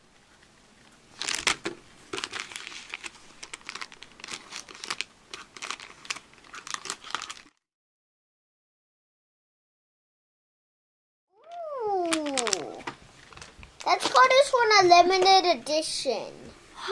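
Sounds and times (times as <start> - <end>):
packaging crinkling and tearing: 1.1 - 7.6, 11.4 - 14.5.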